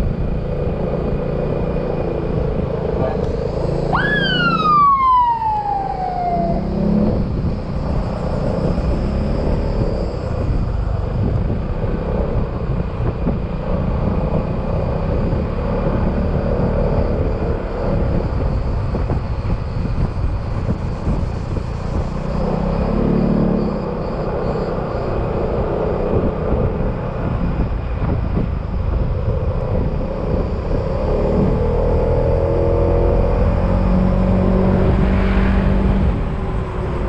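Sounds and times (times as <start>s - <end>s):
wind and road noise: 0.0s - 37.0s
high whistling tone: 3.9s - 7.1s.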